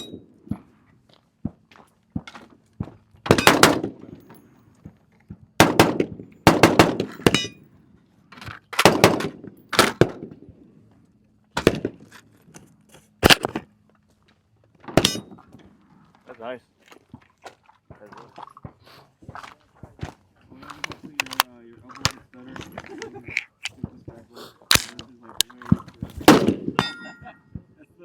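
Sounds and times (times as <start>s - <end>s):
loud gunshots: 3.3s - 4.1s, 5.6s - 7.4s, 8.8s - 10.2s, 26.2s - 26.9s
fainter distant gunshots: 26.2s - 26.8s.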